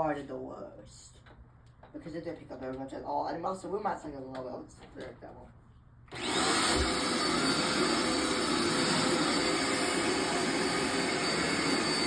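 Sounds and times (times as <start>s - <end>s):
vacuum cleaner motor whining: 6.1s - 12.0s.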